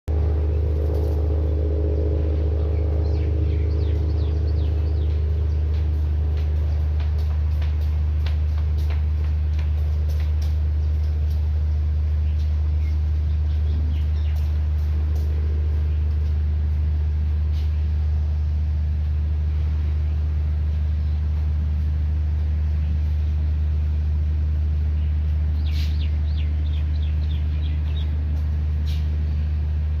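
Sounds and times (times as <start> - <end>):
low mechanical hum: 0.0 - 30.0
low rumble: 0.0 - 30.0
small birds chirping: 2.6 - 6.0, 12.2 - 14.6, 25.0 - 29.6.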